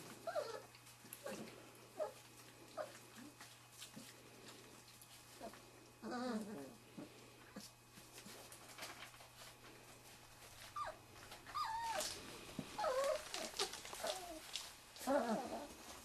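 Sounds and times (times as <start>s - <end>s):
puppies whimpering and squeaking: 0.0s - 2.2s, 5.4s - 6.8s, 10.6s - 16.0s.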